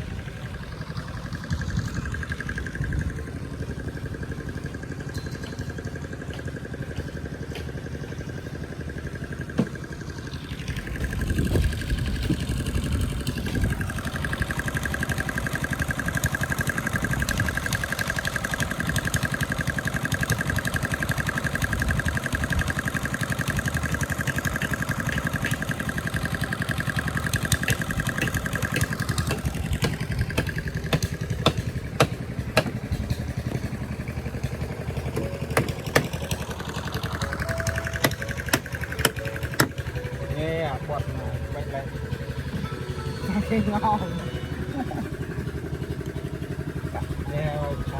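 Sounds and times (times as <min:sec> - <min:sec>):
steady whine: 0:00.0 - 0:18.1
small engine running: 0:00.0 - 0:47.9.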